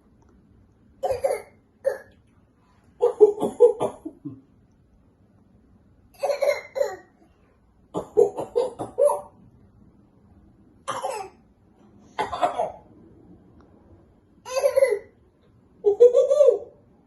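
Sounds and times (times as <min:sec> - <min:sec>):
child pretend coughing: 0:01.0 - 0:02.1, 0:10.9 - 0:11.4, 0:12.2 - 0:12.8.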